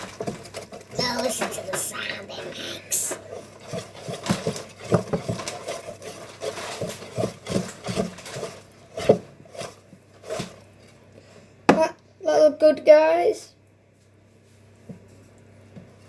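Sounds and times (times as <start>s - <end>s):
whisk beating batter: 0.0s - 11.0s.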